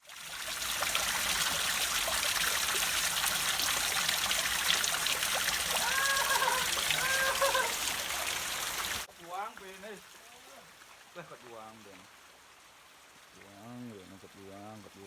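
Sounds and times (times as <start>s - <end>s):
river water flowing over rocks: 0.0s - 13.6s
short pitched calls: 5.7s - 8.0s.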